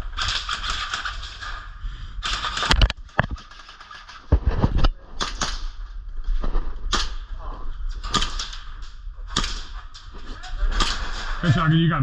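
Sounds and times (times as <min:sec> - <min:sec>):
sharp cracks and knocks: 0:00.0 - 0:07.3, 0:07.9 - 0:11.4
rustling and shuffling: 0:05.8 - 0:08.0.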